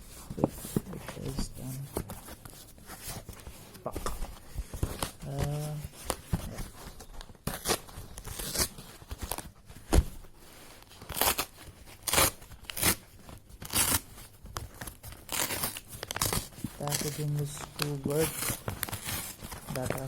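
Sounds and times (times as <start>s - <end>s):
thump: 9.9s - 10.2s.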